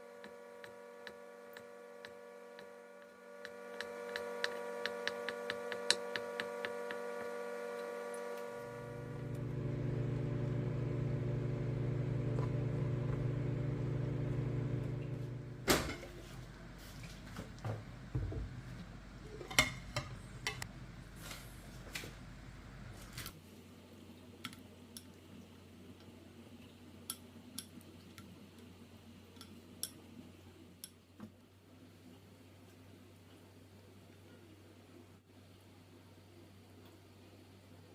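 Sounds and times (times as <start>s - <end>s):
microwave oven humming: 0.0s - 23.3s.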